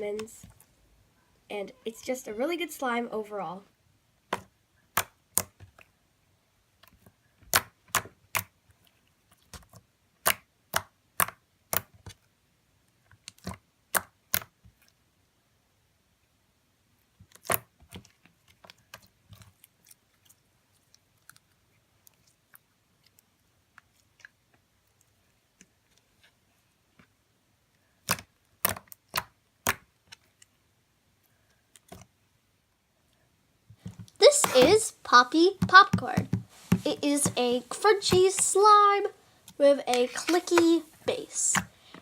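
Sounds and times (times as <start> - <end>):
slime clicking and popping: 13.3 - 14.5, 28.0 - 29.9.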